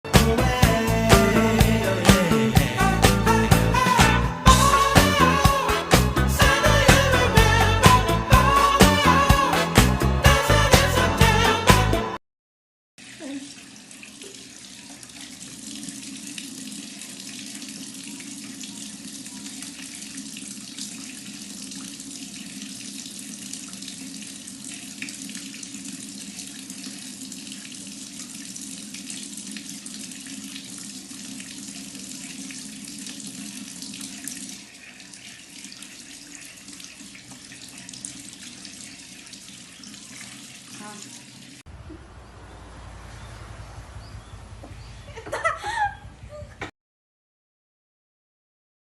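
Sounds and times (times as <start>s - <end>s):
music: 0.1s - 12.2s
tap running into a sink: 36.8s - 38.2s.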